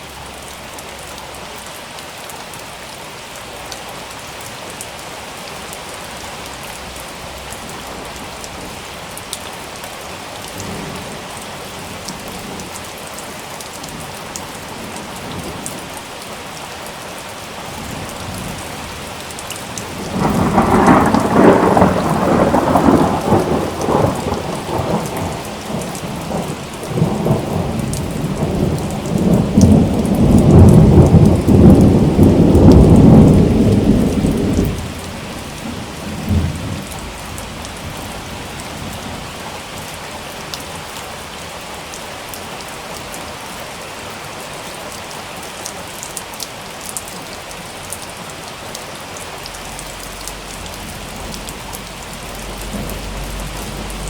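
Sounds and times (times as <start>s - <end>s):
rain falling: 0.0s - 54.0s
rolling thunder: 19.7s - 39.5s, 49.4s - 54.0s.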